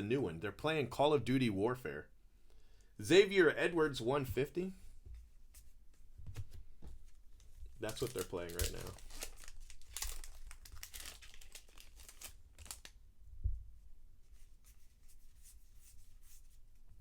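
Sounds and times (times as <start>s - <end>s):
card wrappers crinkling and tearing: 7.8s - 13.0s.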